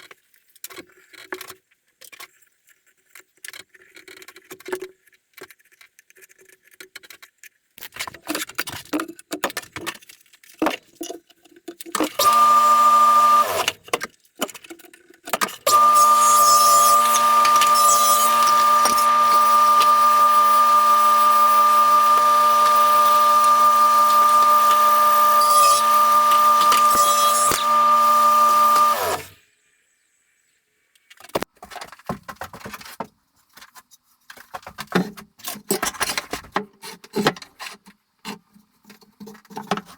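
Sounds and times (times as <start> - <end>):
power tool motor whining: 12.1 - 13.8, 15.6 - 29.4.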